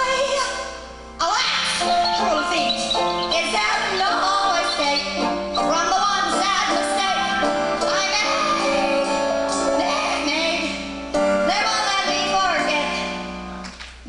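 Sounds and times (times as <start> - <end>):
instrumental accompaniment: 1.6 - 11.9
person singing: 1.8 - 10.8.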